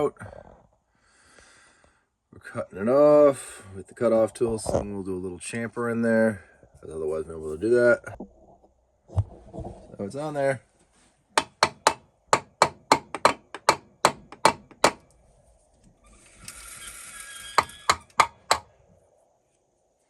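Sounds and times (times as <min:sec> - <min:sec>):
sharp metallic taps: 0:11.4 - 0:15.0.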